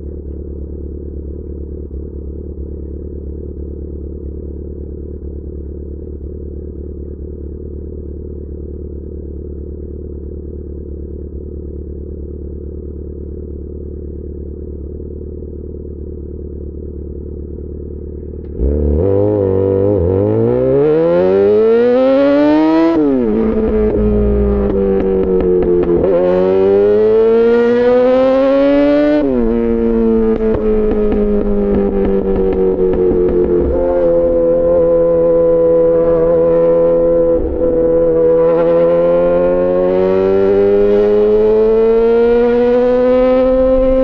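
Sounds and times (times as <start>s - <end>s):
motorcycle engine idling and revving: 0.0s - 44.0s.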